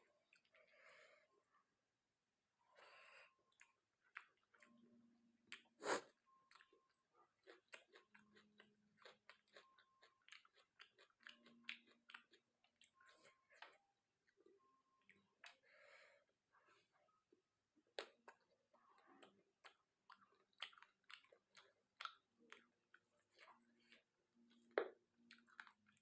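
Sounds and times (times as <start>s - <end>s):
close chewing with wet mouth clicks: 3.5s - 4.9s, 5.5s - 13.4s, 17.9s - 26.0s.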